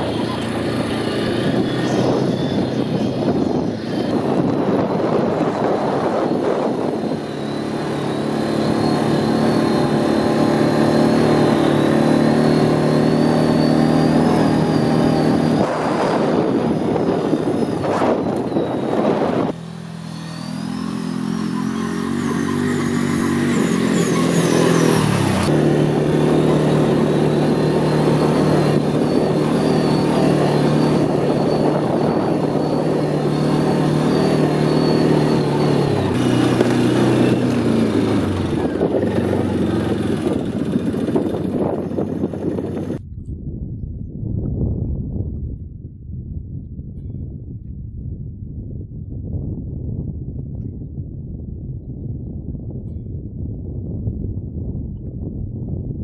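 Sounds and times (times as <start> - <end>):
atv engine running: 0.0 - 43.0.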